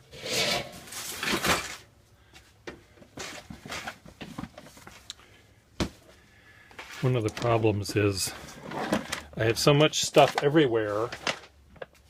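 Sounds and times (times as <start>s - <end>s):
rustling scrape: 0.0s - 1.9s.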